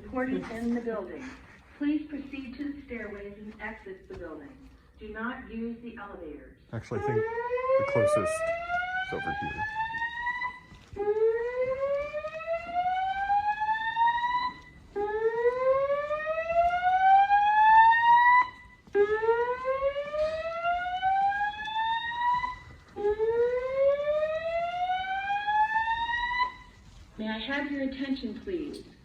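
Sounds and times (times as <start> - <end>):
fire alarm whoop tone: 7.0 - 26.8.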